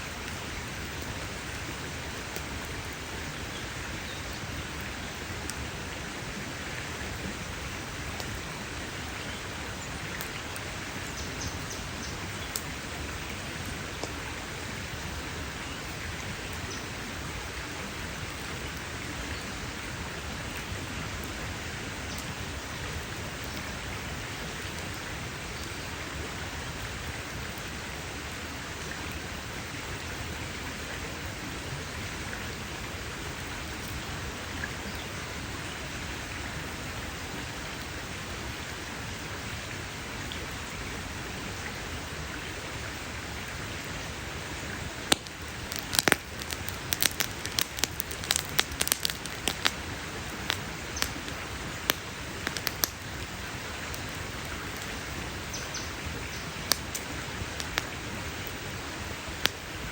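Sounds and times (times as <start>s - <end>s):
campfire crackling and popping: 0.1s - 6.0s, 9.4s - 25.8s, 43.8s - 59.9s.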